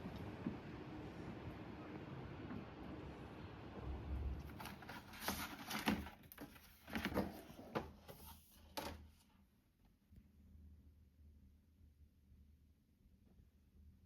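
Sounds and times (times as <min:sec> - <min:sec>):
handling knocks and rustles: 0:04.4 - 0:09.1.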